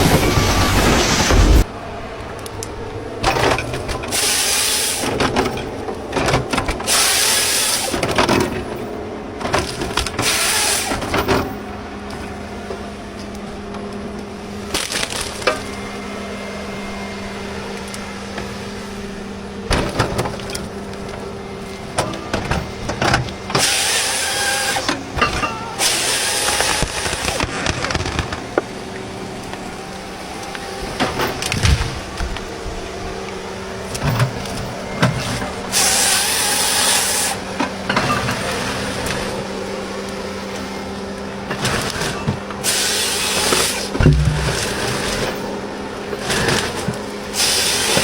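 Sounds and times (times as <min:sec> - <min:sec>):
chainsaw engine running: 0:02.5 - 0:09.0, 0:09.7 - 0:48.0
wood cracking and crashing: 0:14.6 - 0:15.8, 0:23.2 - 0:28.8, 0:41.6 - 0:45.5.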